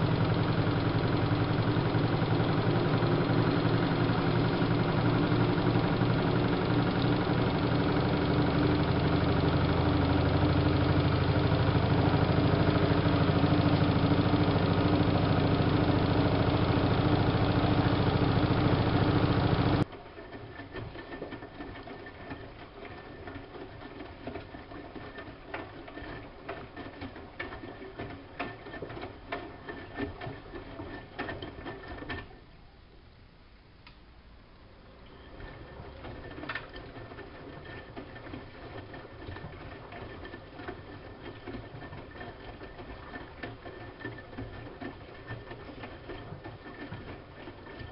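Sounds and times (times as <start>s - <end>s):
washing machine motor humming: 0.0s - 19.9s, 34.7s - 47.9s
faint clicks and rattles: 0.0s - 32.5s, 35.0s - 47.9s.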